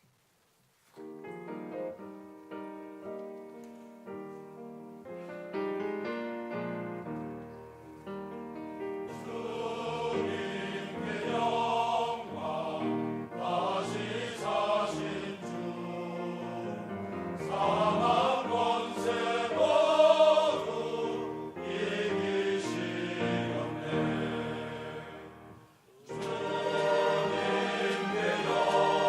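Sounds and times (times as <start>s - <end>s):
keyboard accompaniment: 1.0s - 29.0s
church choir singing: 8.8s - 29.0s.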